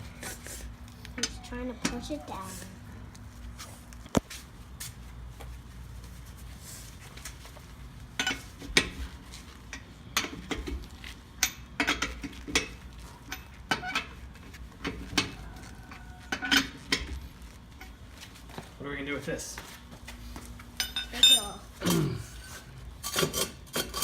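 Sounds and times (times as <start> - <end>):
lug wrench clanking on lug nuts: 9.7 - 10.8, 11.4 - 14.2.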